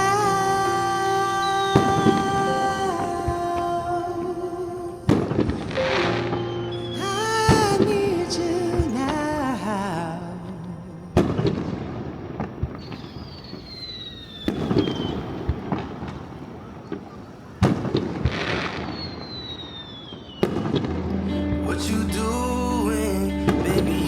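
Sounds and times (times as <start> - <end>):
firework crackling: 0.0 - 10.2, 11.2 - 24.0
firework booms: 11.2 - 21.0.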